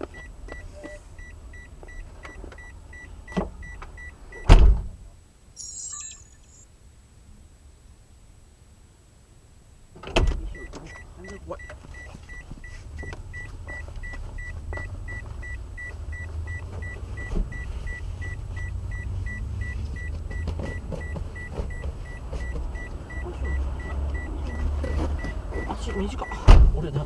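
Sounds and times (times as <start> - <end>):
high electronic warning chime: 5.6 - 6.7, 15.1 - 26.4
car engine starting and idling: 9.8 - 27.0.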